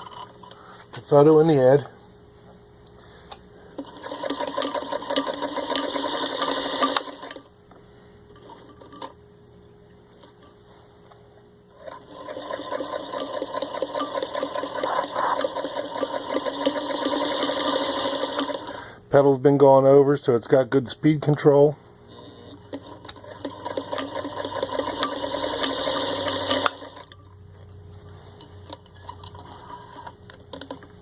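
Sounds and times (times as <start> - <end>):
sewing machine stitching: 3.8 - 7.5, 11.7 - 18.7, 22.1 - 27.1.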